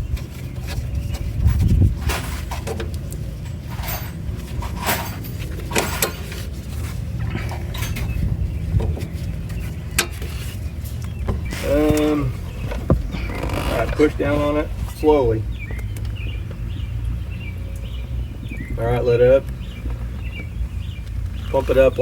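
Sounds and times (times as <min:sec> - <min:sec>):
low rumble: 0:00.0 - 0:21.7
metal tools clinking and tapping: 0:01.5 - 0:06.5, 0:07.2 - 0:08.2.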